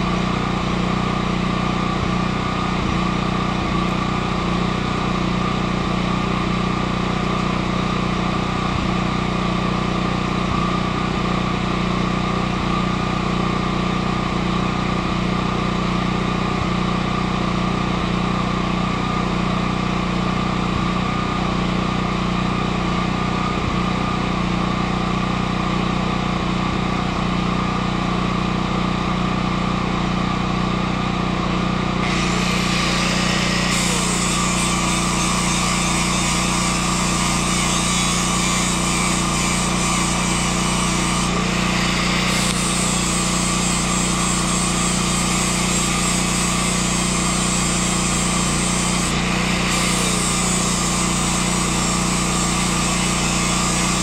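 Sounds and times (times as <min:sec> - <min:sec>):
machine hum: 0:32.0 - 0:54.0.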